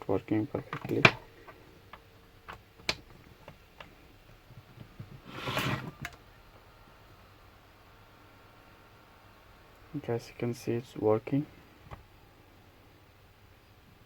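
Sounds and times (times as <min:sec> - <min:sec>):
scraping rustle: 0:05.2 - 0:06.0.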